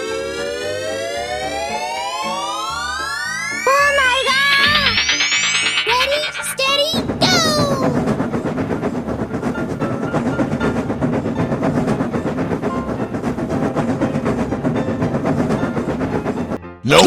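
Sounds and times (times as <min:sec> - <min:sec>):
train wheels clattering on rails: 0:07.3 - 0:16.6.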